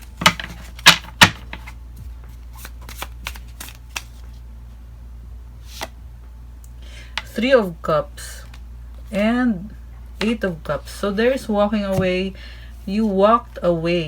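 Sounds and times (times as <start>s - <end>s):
cards shuffling: 0.0s - 4.4s, 5.6s - 6.0s.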